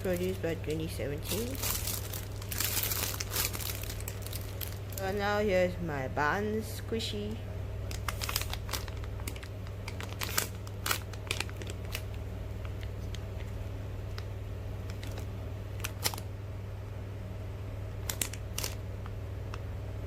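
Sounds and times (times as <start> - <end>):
plastic packaging crinkling: 0.0 - 5.2, 7.8 - 16.3, 18.0 - 18.9
steady low hum: 0.0 - 20.0.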